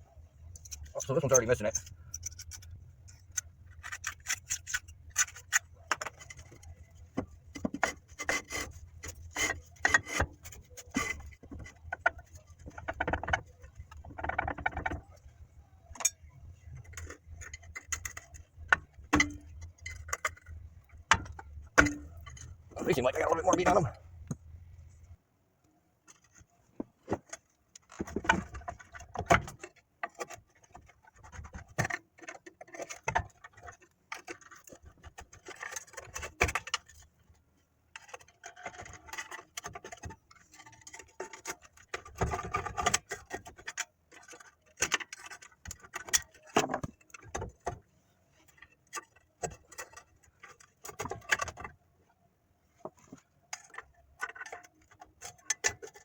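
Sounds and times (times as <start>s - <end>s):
metallic clicks and rattles of tools: 0.5s - 15.1s.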